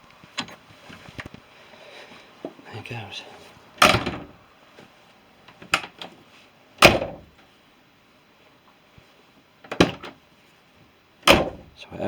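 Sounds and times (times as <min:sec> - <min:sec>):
car door latch clicks and knocks: 0:03.8 - 0:04.3, 0:06.8 - 0:07.3, 0:09.7 - 0:10.2, 0:11.2 - 0:11.7.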